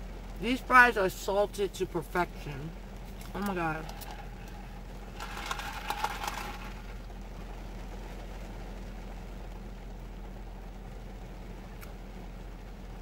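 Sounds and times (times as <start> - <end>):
car idling hum: 0.0 - 13.0.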